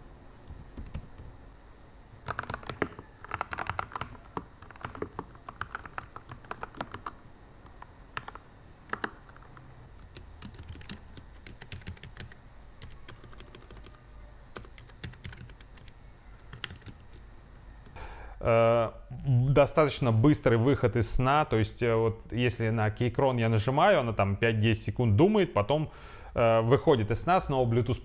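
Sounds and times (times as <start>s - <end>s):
typing on keyboard: 0.5s - 1.2s, 2.2s - 17.2s.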